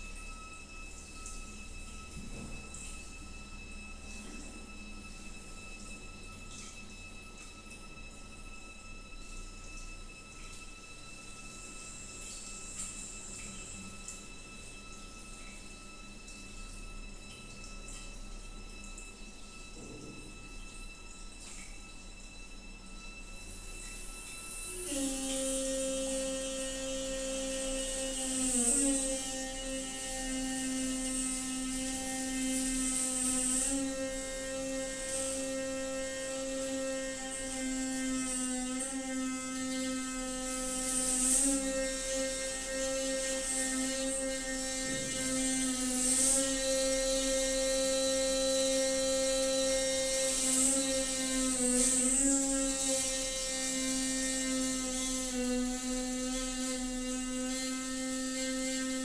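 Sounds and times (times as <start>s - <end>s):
water pipe droning tone: 0.0s - 59.0s.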